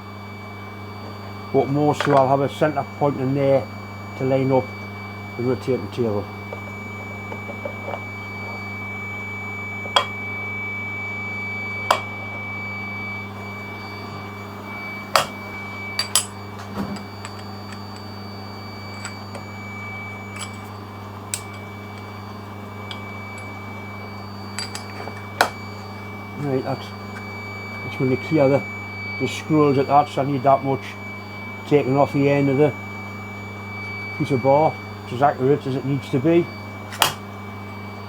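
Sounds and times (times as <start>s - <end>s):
machine hum with high whine: 0.0s - 38.0s
metal parts and tools clinking: 16.0s - 18.0s, 20.3s - 21.6s, 24.6s - 25.6s.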